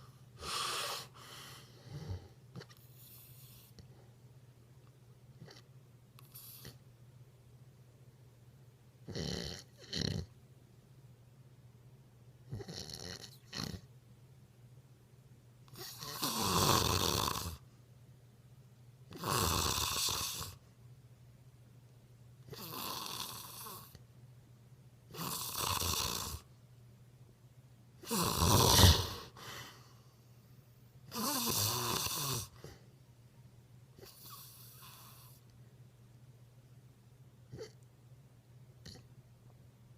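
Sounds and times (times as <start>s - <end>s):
snoring: 0.4s - 3.9s, 9.0s - 10.3s, 12.5s - 13.9s, 15.7s - 17.6s, 19.1s - 20.6s, 22.5s - 24.0s, 25.1s - 26.5s, 28.0s - 29.4s, 31.1s - 32.8s, 34.0s - 35.5s, 37.5s - 37.8s, 38.8s - 39.1s.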